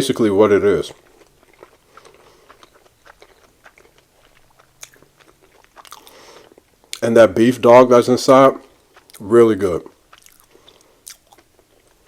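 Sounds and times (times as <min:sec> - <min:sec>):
chewing and crunching: 0:00.1 - 0:07.2, 0:08.2 - 0:12.0
wet mouth clicks: 0:10.1 - 0:12.0.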